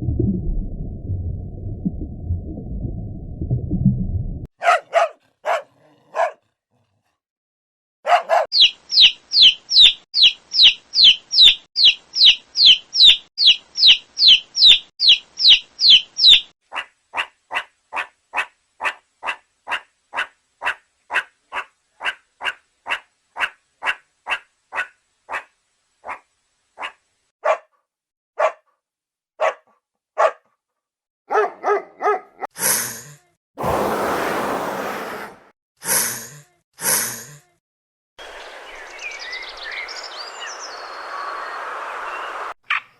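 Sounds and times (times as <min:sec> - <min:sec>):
dog barking: 0:04.6 - 0:07.2, 0:08.0 - 0:08.6, 0:16.7 - 0:27.8, 0:28.4 - 0:28.8, 0:29.4 - 0:30.6, 0:31.3 - 0:32.5.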